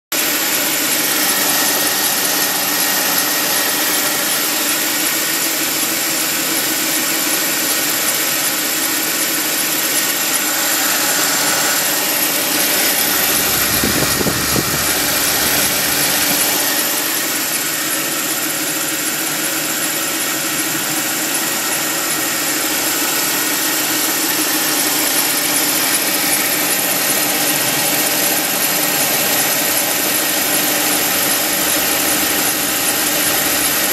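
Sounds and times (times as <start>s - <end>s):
car engine running: 0.2s - 33.9s
low rumble: 10.6s - 16.6s.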